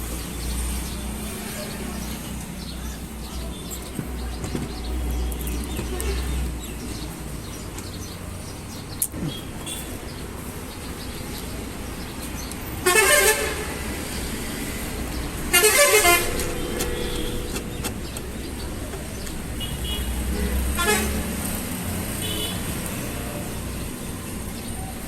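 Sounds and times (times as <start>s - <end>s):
road traffic rumble: 0.0s - 25.0s
vehicle horn honking: 12.8s - 13.8s, 15.5s - 17.5s, 19.6s - 21.3s, 22.2s - 22.6s.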